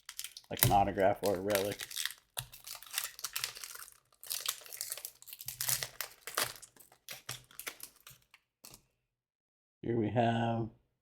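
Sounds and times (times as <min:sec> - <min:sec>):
foil wrapper crinkling: 0:00.0 - 0:08.8.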